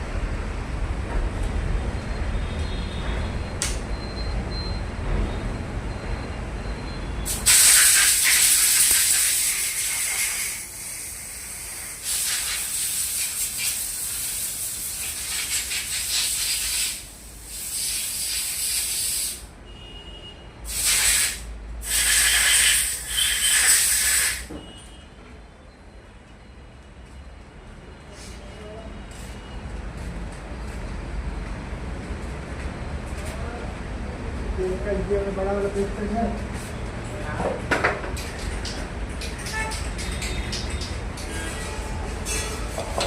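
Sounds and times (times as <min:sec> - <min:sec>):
pressurised jet hissing: 0:07.3 - 0:19.4, 0:20.7 - 0:24.5.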